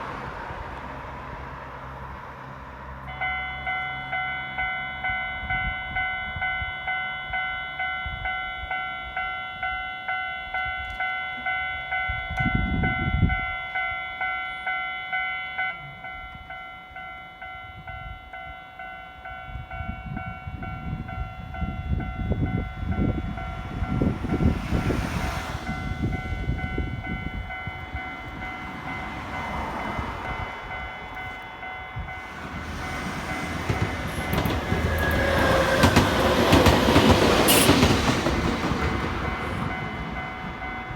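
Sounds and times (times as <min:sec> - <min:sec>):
approaching train rumble: 0:00.0 - 0:08.4, 0:19.2 - 0:40.9
level crossing warning bell: 0:03.0 - 0:24.7, 0:25.5 - 0:40.9.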